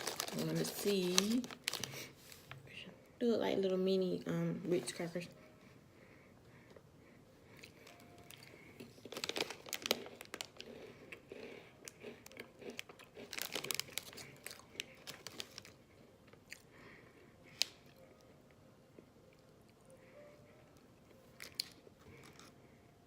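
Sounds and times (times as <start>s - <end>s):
plastic packet crinkling: 0.0s - 2.5s, 7.8s - 11.0s, 11.9s - 15.8s
crunchy biscuits being chewed: 7.4s - 18.3s, 20.8s - 22.8s.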